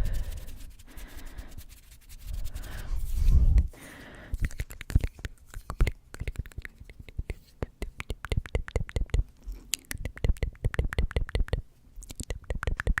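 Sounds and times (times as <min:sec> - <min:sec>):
quick sharp clicks and taps: 0:04.4 - 0:13.0.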